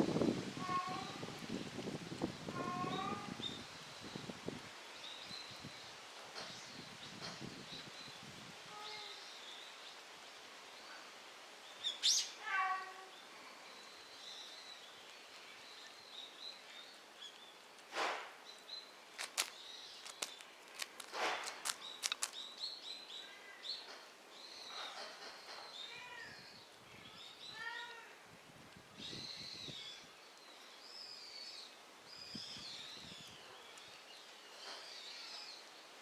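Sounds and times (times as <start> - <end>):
faint high chirping calls: 11.8 - 15.0
crackling rustles: 16.7 - 22.6.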